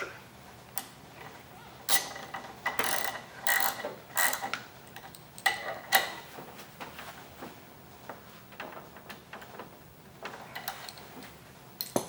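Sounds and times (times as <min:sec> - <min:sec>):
socket wrench ratcheting: 0:01.9 - 0:06.1.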